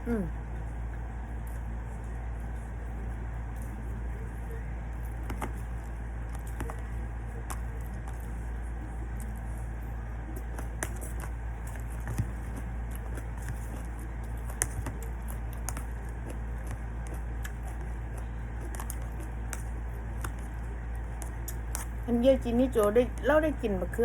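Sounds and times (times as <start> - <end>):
steady low hum: 0.0 - 24.0
person chewing food: 4.9 - 22.0.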